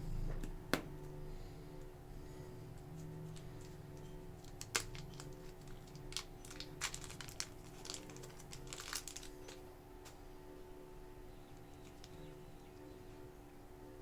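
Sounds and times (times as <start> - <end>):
packaging crinkling: 3.6 - 9.7.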